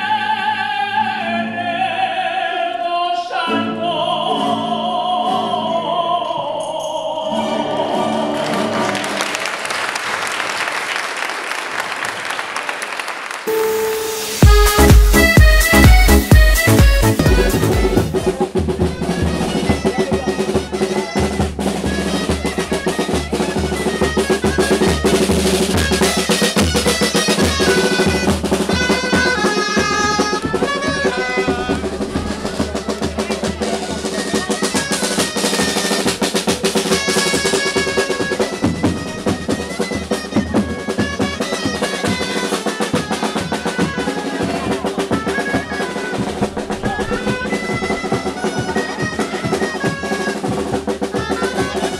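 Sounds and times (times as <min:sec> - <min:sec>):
snare drum rolling: 0:13.4 - 0:51.9
reedy pipe melody: 0:13.5 - 0:51.9
bass drum beating: 0:14.4 - 0:19.8.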